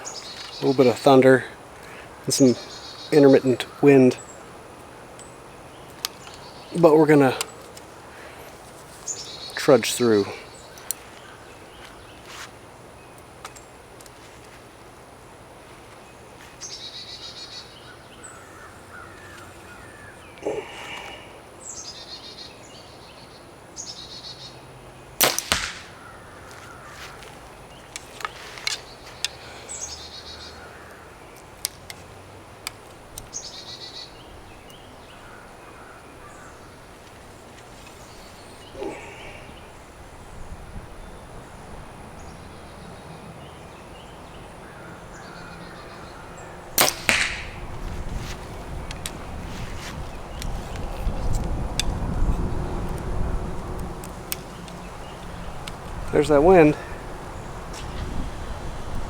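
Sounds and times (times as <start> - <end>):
birds chirping: 0.0 - 59.0
bow string crack: 25.2 - 27.4, 46.8 - 52.0.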